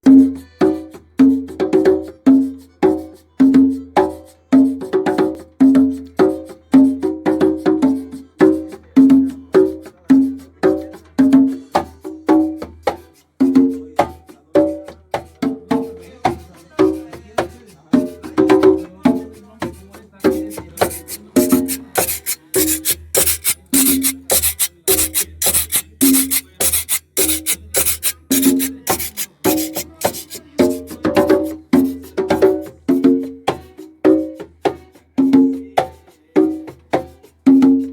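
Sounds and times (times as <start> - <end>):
hissy percussion stroke: 20.2 - 31.6
instrumental band music: 20.2 - 34.6.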